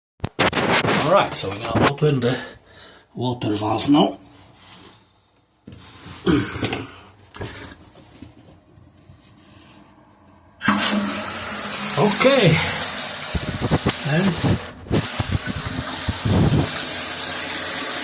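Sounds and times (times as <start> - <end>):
faint handling sounds: 4.2 - 6.2, 7.2 - 10.5
person coughing: 6.2 - 7.1
water rushing into toilet tank: 10.6 - 18.0.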